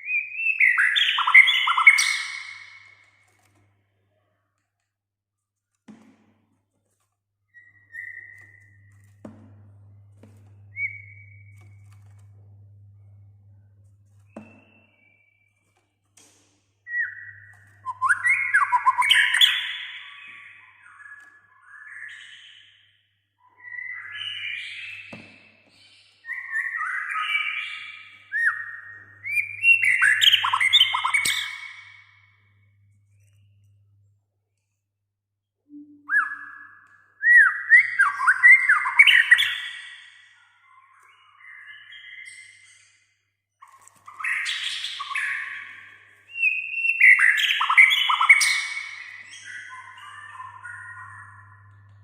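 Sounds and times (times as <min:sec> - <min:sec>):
songbird singing whistled notes: 0:00.0 - 0:03.0, 0:07.6 - 0:09.3, 0:10.6 - 0:12.3, 0:16.9 - 0:22.8, 0:23.4 - 0:33.6, 0:35.7 - 0:43.0, 0:43.6 - 0:52.0
songbird singing: 0:23.5 - 0:33.6, 0:43.7 - 0:52.0.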